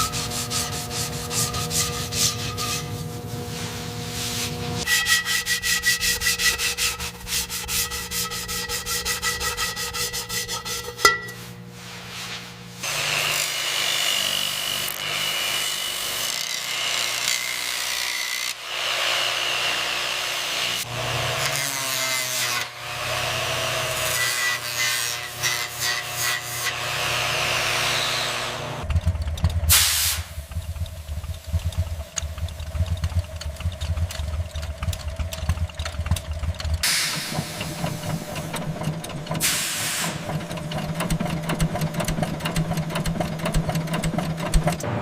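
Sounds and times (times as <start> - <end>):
metal filing by hand: 0.0 - 11.4, 21.3 - 28.3.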